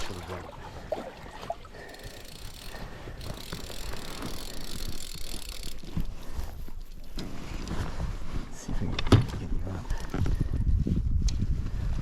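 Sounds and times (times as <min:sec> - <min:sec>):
fishing reel ratcheting: 0:01.8 - 0:07.1.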